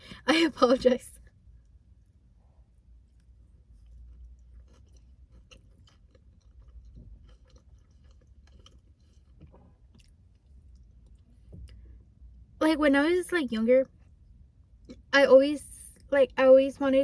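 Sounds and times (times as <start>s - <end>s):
faint chewing of food: 1.5s - 12.1s.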